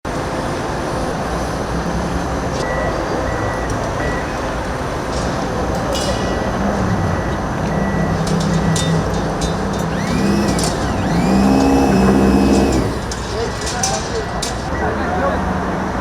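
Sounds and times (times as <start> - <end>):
heavy machinery engine hum: 8.2 - 13.5.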